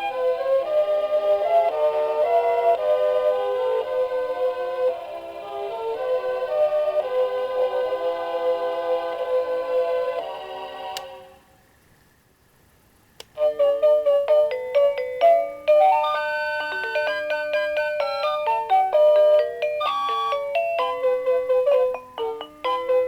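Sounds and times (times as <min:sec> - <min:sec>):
click: 0:13.2 - 0:13.4
electronic alarm clock melody: 0:13.4 - 0:23.0.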